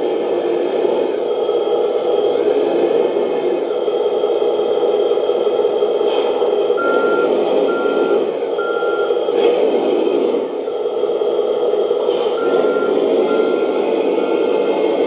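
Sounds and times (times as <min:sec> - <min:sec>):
simulated diesel engine running: 0:00.0 - 0:15.0
reversing beeps: 0:06.8 - 0:09.2, 0:12.3 - 0:15.0.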